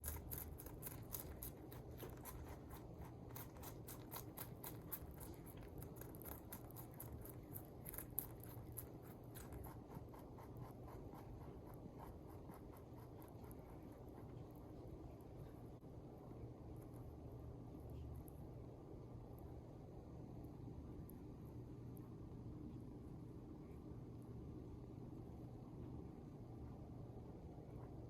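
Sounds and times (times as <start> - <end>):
rabbit grinding teeth: 0.0 - 15.0.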